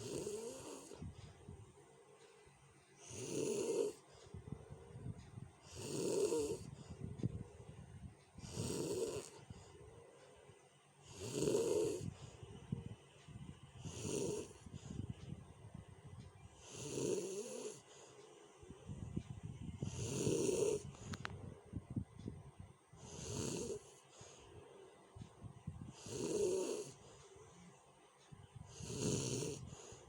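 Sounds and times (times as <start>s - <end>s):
person snoring loudly: 0.0s - 1.0s, 3.0s - 4.0s, 5.7s - 6.8s, 8.4s - 9.5s, 11.0s - 12.2s, 13.8s - 14.6s, 16.6s - 17.8s, 19.8s - 21.2s, 23.0s - 24.0s, 25.9s - 27.1s, 28.7s - 30.0s.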